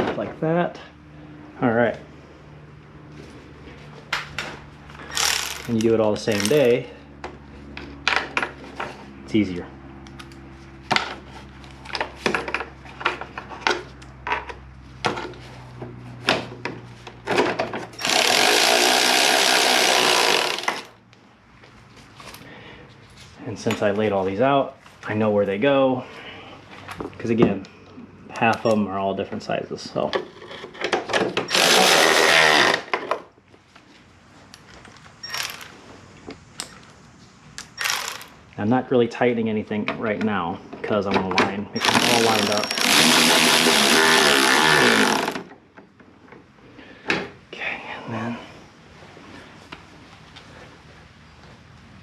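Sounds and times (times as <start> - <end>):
handheld power tool running: 5.0 - 6.6, 18.0 - 21.0, 31.5 - 33.0, 35.2 - 35.7, 37.8 - 38.3, 41.8 - 45.5.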